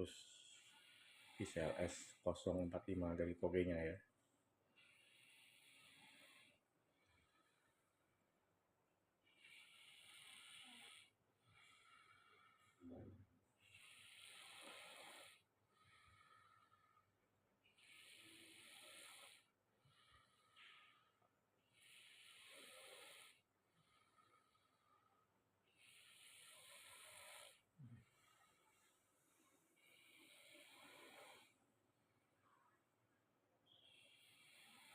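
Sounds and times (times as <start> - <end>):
man snoring faintly: 0.0 - 3.6, 4.8 - 7.8, 9.2 - 31.6, 33.6 - 34.9.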